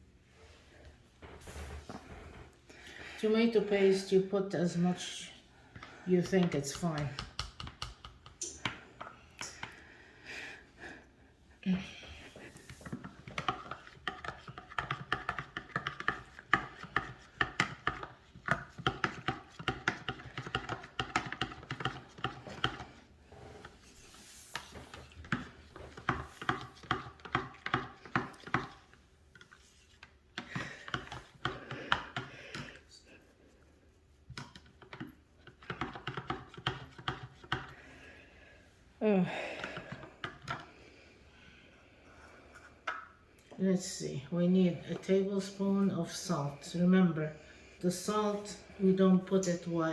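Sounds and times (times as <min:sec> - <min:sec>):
food stirred in container: 0:05.6 - 0:09.8, 0:12.4 - 0:38.1.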